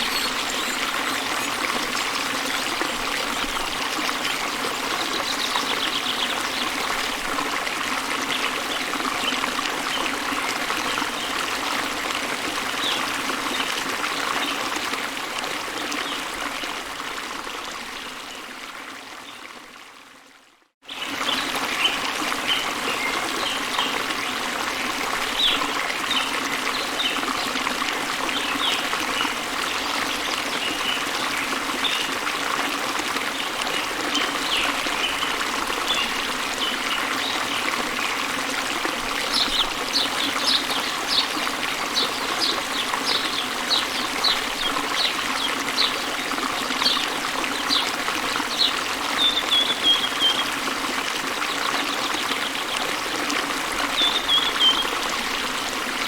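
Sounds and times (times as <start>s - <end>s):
small birds chirping: 0.0s - 2.7s
waterfall rushing: 0.0s - 4.4s.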